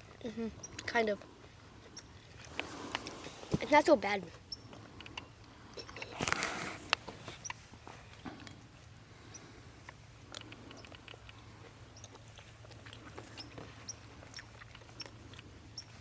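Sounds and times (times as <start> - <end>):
people chewing: 0.0 - 3.7, 4.3 - 16.0
small clicks: 9.3 - 11.4.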